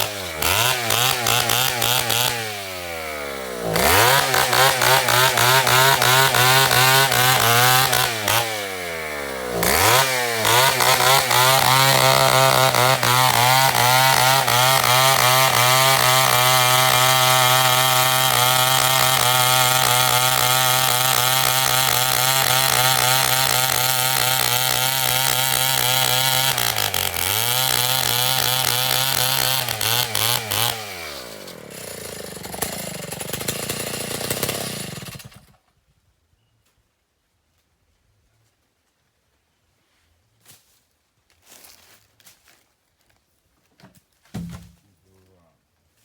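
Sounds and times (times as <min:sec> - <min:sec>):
chainsaw running: 0:00.0 - 0:35.6.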